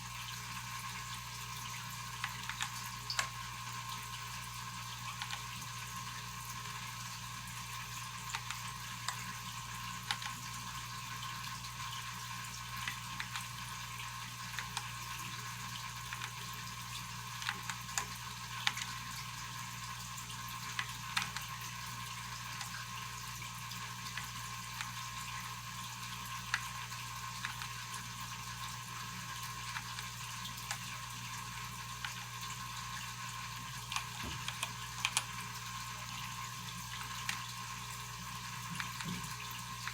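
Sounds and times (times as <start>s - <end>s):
faint clicks: 33.9s - 35.4s.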